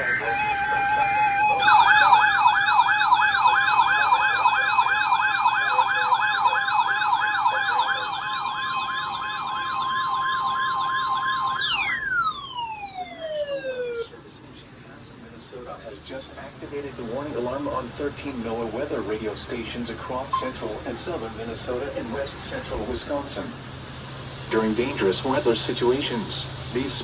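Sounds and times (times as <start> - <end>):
steady high tone: 0.0 - 14.1
warbling emergency alert siren: 0.0 - 14.1.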